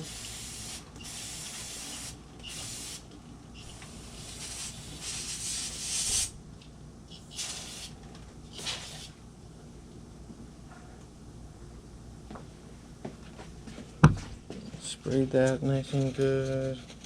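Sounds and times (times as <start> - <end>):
aerosol spray hissing bursts: 0.0 - 6.3, 7.2 - 9.1.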